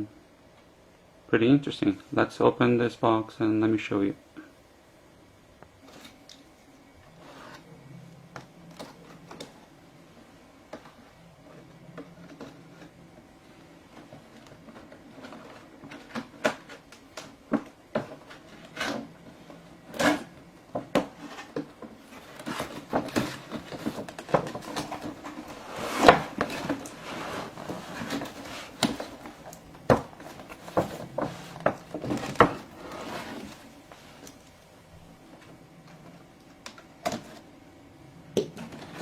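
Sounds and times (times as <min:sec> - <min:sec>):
plastic packaging rustling: 0:10.8 - 0:37.4
cardboard box knocks and clicks: 0:27.7 - 0:32.8.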